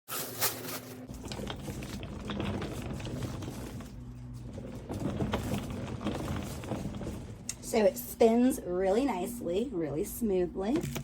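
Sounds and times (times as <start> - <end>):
suitcase wheels rolling on floor: 0.4 - 8.4.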